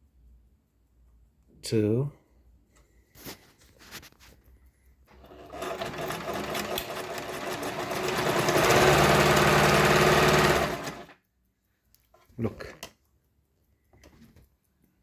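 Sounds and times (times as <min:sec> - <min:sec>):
sewing machine sewing: 0:05.1 - 0:11.2.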